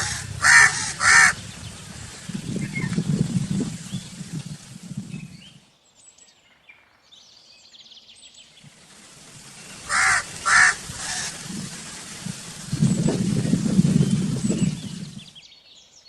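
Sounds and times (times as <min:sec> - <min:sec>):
crow cawing: 0:00.0 - 0:01.6, 0:09.9 - 0:11.4
small birds chirping: 0:00.0 - 0:06.6, 0:07.2 - 0:16.0.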